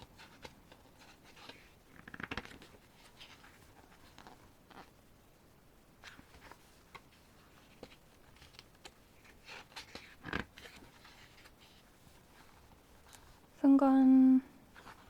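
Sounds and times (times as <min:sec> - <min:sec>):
paper pages rustling: 0:00.0 - 0:05.0, 0:06.0 - 0:13.6, 0:14.7 - 0:15.0.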